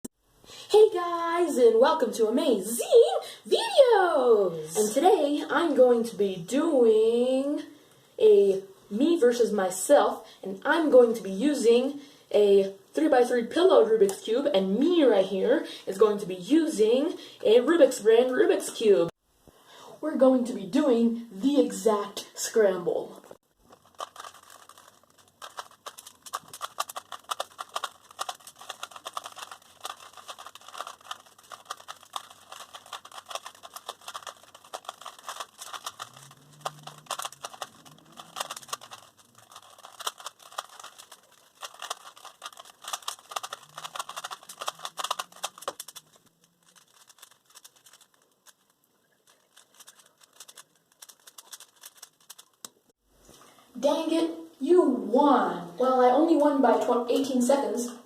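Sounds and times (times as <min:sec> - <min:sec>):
puzzle cube layers clicking: 0:23.7 - 0:52.8.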